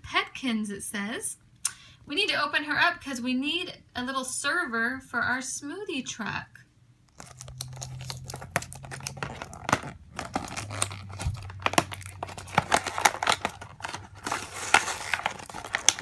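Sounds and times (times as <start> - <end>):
package being torn open: 7.1 - 16.0.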